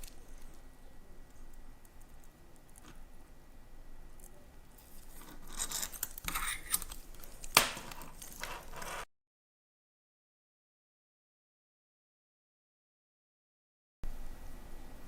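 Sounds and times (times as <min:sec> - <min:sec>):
scratchy scraping and rustling: 0:04.8 - 0:09.1.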